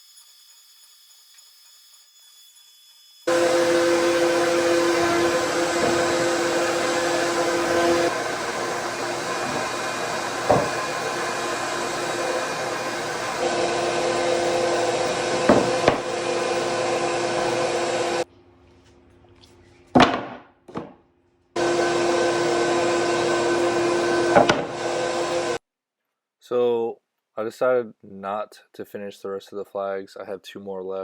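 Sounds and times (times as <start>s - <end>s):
power tool motor humming: 0.0s - 18.3s, 21.6s - 25.6s
sharp knocks: 8.8s - 11.2s, 15.4s - 16.1s, 20.0s - 21.0s, 24.3s - 24.8s.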